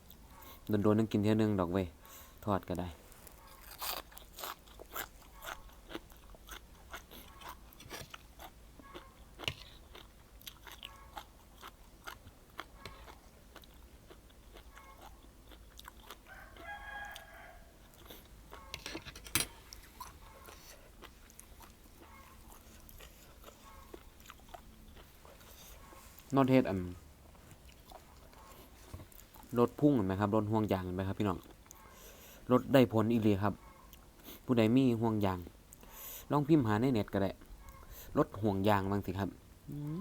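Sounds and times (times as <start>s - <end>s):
person chewing and crunching food: 3.0s - 18.8s, 19.6s - 29.8s, 31.1s - 32.4s
rooster crowing: 16.2s - 18.0s.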